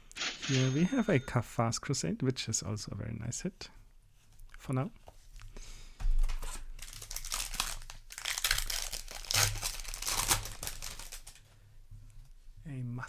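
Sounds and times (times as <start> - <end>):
foil wrapper crinkling: 6.4 - 11.4.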